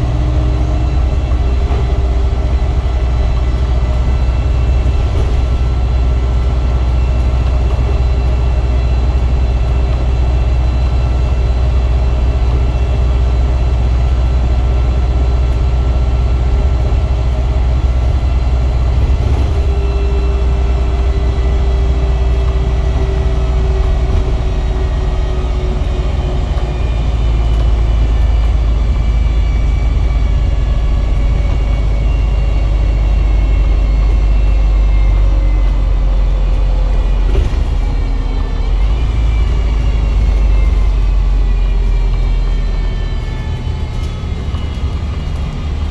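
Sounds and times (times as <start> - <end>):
bus engine rumble: 0.0 - 45.9
whirly whines: 0.0 - 45.9.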